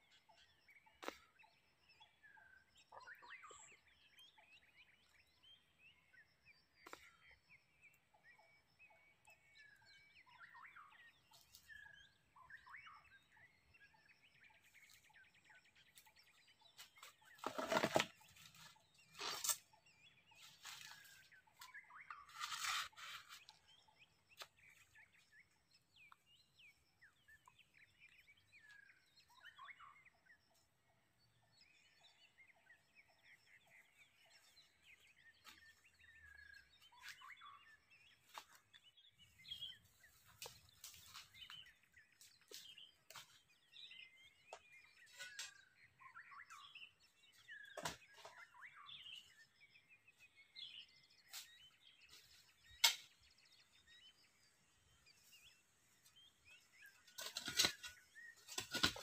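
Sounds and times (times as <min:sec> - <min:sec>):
faint bird chirps and whistles: 0:31.4 - 0:59.0.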